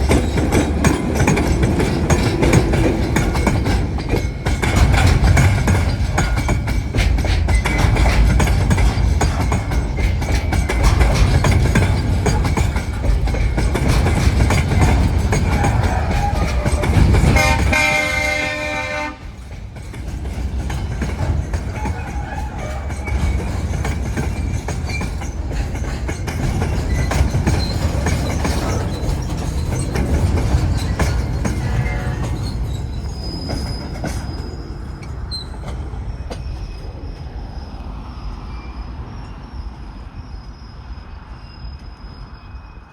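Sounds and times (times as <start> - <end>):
diesel locomotive rumbling: 0.0 - 42.9
locomotive horn: 15.5 - 19.4, 31.6 - 32.6.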